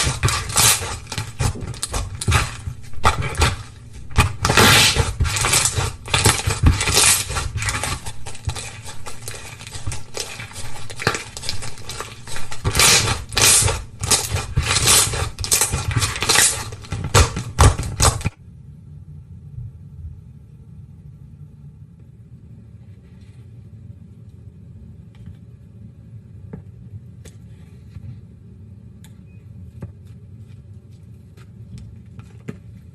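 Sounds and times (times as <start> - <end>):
slime squelching and clicking: 0.0 - 18.3.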